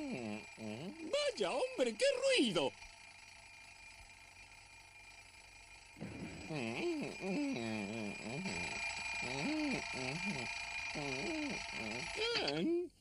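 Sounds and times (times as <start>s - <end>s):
cartoon voice sliding in pitch: 6.2s - 12.9s.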